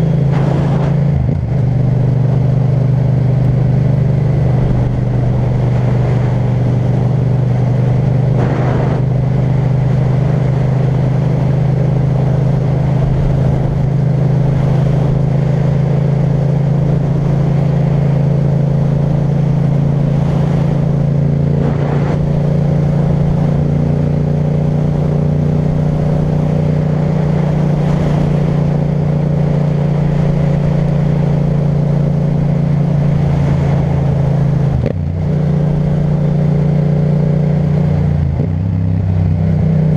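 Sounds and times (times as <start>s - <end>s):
motorcycle engine cruising: 0.0s - 39.9s
brief noisy rushes: 8.4s - 9.1s.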